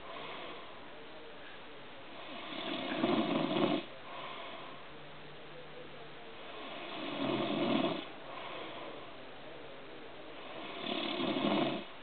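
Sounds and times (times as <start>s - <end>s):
person snoring: 6.6s - 8.6s, 10.4s - 11.9s.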